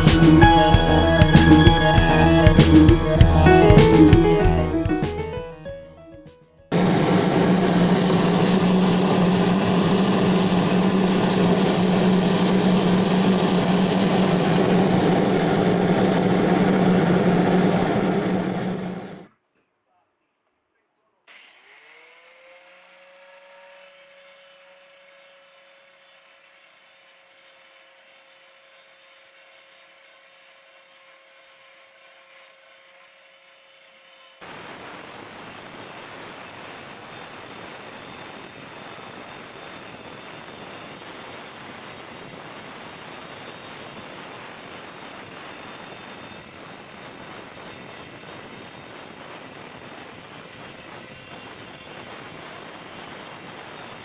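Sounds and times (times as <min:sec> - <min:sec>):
electric motor whine: 0:00.0 - 0:04.6, 0:06.7 - 0:19.3
rasping grinding noise: 0:06.7 - 0:19.2.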